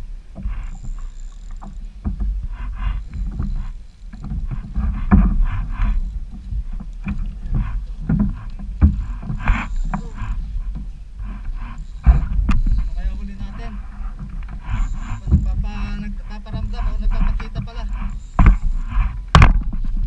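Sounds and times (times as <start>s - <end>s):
wind rumbling on microphone: 0.0s - 20.0s
water slapping against kayak hull: 0.3s - 20.0s
knocks against boat: 1.6s - 2.4s, 3.3s - 12.8s, 18.4s - 20.0s.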